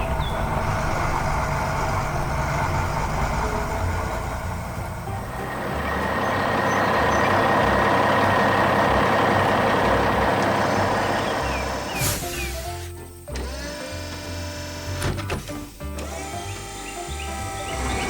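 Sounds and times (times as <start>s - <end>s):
truck engine running: 0.0s - 18.0s
sharp hiss: 11.9s - 13.4s.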